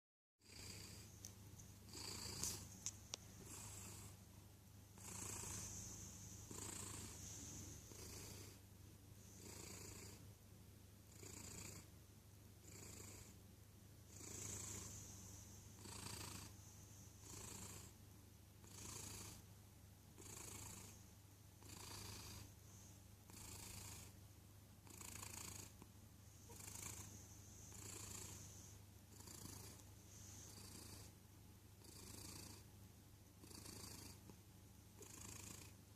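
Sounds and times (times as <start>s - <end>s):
cat snoring: 0.4s - 1.2s, 1.9s - 2.6s, 3.3s - 4.2s, 5.0s - 8.6s, 9.2s - 10.3s, 11.1s - 11.9s, 12.6s - 13.4s, 14.1s - 18.0s, 18.6s - 19.5s, 20.2s - 21.0s, 21.6s - 24.2s, 24.8s - 25.8s, 26.4s - 31.2s, 31.8s - 32.7s, 33.4s - 34.4s, 35.0s - 35.8s
steady low hum: 0.4s - 33.4s.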